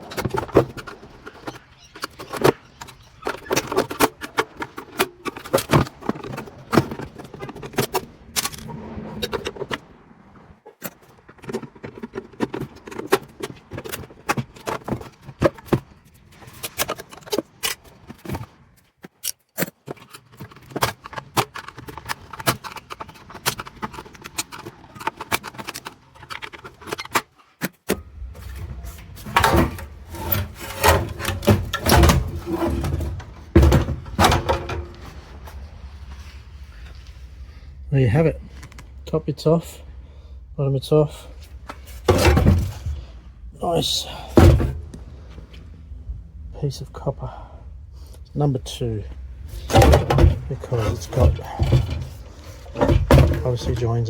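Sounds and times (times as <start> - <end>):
metal tools clinking and scraping: 19.2 - 37.0, 49.4 - 54.0.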